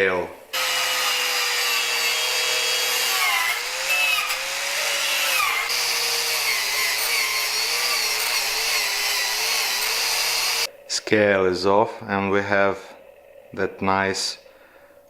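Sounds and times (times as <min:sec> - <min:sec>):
wire wheel grinder on steel: 0:00.6 - 0:10.7.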